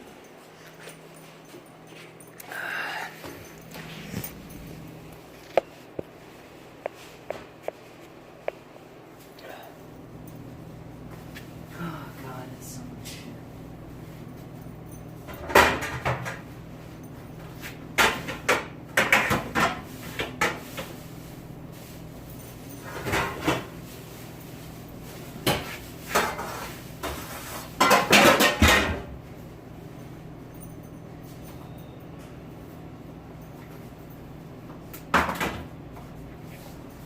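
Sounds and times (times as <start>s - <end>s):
steady low hum: 0.0s - 28.0s
dishes and pans clattering: 15.3s - 16.4s, 18.0s - 20.9s, 25.4s - 29.2s.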